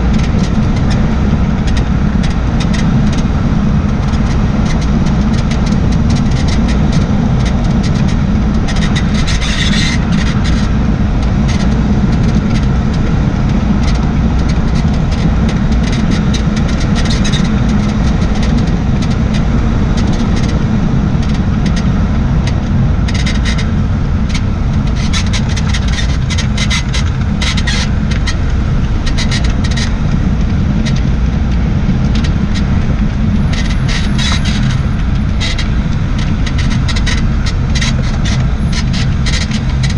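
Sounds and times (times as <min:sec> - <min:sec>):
road and tyre rumble: 0:00.0 - 0:39.9
suspension creaks and squeaks: 0:32.1 - 0:39.9.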